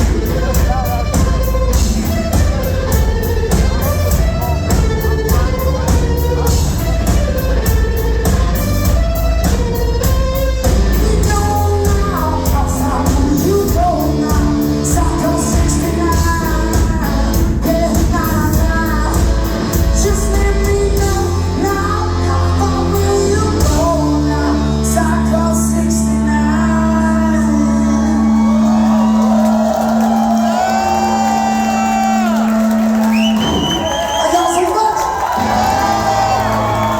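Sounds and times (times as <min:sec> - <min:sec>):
electric guitar: 0:00.0 - 0:34.0
person shouting singing: 0:04.1 - 0:07.2.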